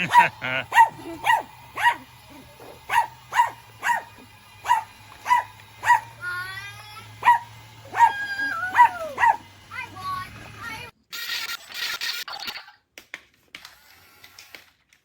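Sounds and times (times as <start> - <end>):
dog barking: 0.1 - 6.2, 7.2 - 9.5.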